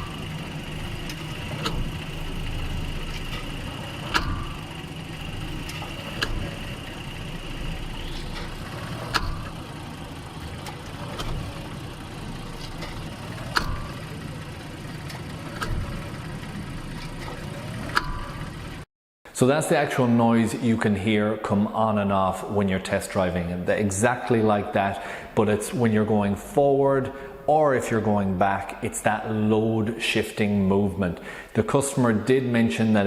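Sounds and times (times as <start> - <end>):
driveline clunk: 0.0 - 16.2
car engine running: 0.0 - 18.9.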